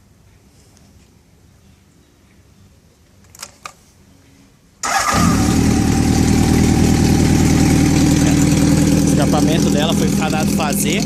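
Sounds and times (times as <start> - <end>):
motorcycle engine starting and idling: 4.8 - 11.0.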